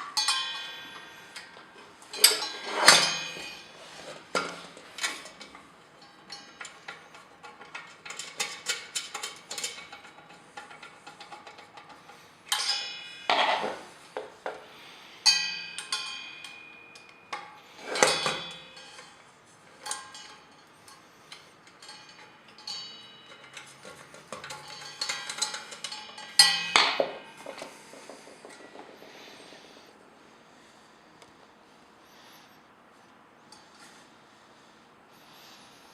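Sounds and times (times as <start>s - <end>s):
metal parts clicking and clinking: 0.0s - 14.0s, 15.2s - 29.9s.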